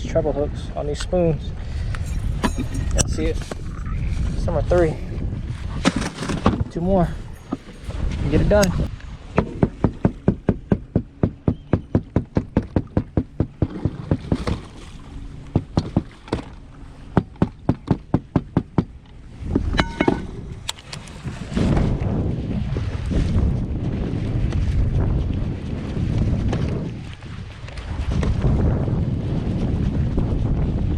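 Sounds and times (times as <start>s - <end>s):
wind rumble on microphone: 0.0s - 30.9s.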